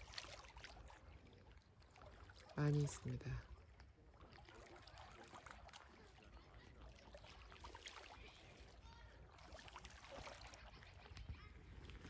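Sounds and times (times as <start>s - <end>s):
gentle water sounds: 0.0s - 12.0s.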